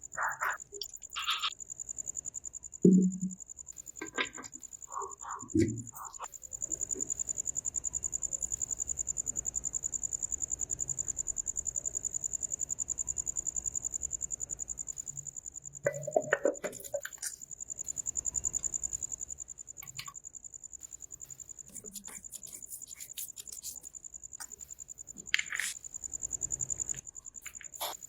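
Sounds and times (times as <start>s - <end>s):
cricket trilling: 0.0s - 28.0s
knocks and clicks: 2.8s - 3.4s.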